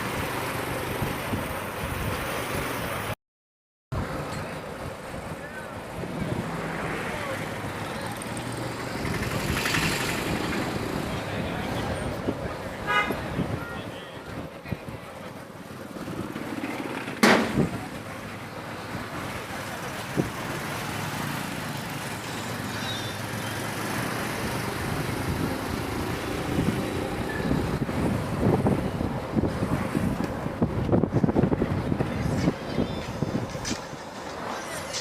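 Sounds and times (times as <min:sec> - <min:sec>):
vehicle road noise: 0:00.0 - 0:03.2, 0:03.9 - 0:35.0
wind buffeting microphone: 0:08.7 - 0:18.2, 0:24.0 - 0:35.0
loud sharp knock: 0:17.2 - 0:17.7.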